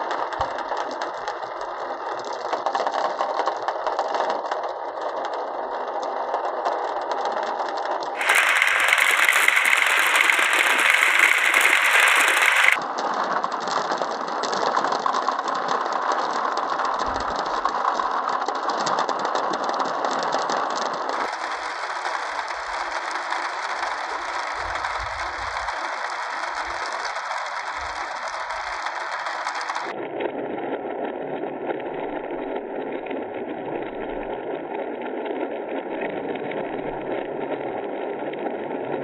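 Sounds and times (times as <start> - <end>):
marbles rattling down wooden run: 8.2 - 12.8, 18.9 - 29.9.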